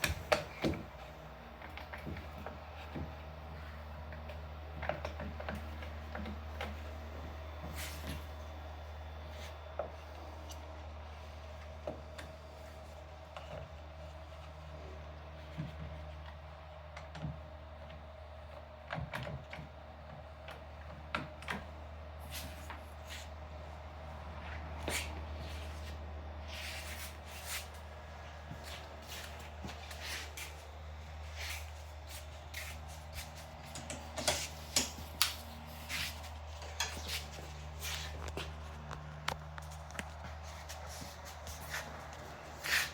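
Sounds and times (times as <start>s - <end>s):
steady low hum: 0.0s - 42.9s.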